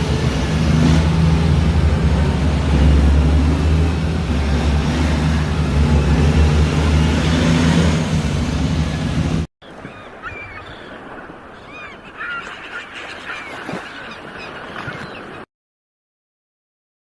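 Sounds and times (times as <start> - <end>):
diesel truck engine droning: 0.0 - 9.5
road and traffic noise: 0.0 - 9.5.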